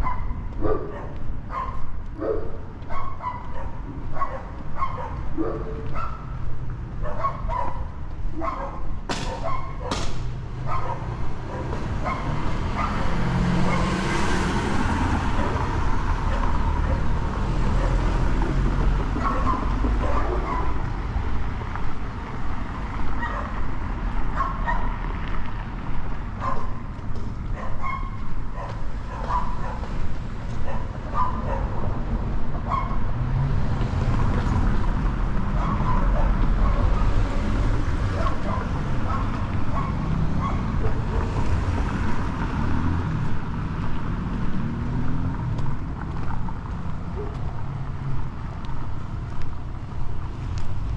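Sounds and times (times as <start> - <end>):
dog barking: 0.0 - 6.4, 7.0 - 10.0, 10.6 - 14.0, 15.3 - 18.2, 19.2 - 20.9, 23.2 - 23.6, 24.3 - 25.0, 26.4 - 26.8, 27.5 - 29.9, 30.6 - 31.9, 32.6 - 33.1, 35.5 - 37.2, 38.1 - 41.3, 47.1 - 47.5
low rumble of street traffic: 0.0 - 50.9.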